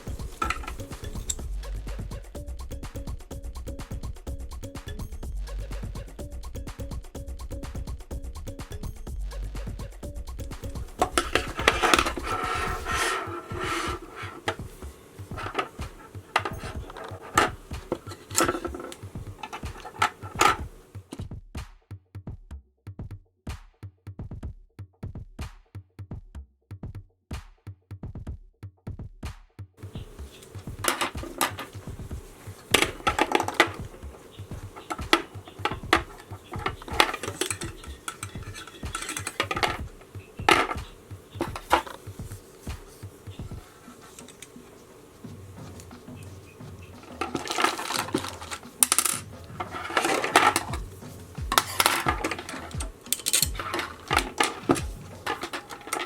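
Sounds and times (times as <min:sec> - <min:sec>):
small hard parts clinking: 0:00.0 - 0:01.6, 0:10.4 - 0:21.2, 0:29.8 - 0:56.0
electronic music with a beat: 0:00.0 - 0:11.8, 0:29.8 - 0:31.0, 0:33.8 - 0:55.4
sharp clicks and clatters: 0:10.5 - 0:21.2, 0:29.8 - 0:44.6, 0:45.7 - 0:56.0.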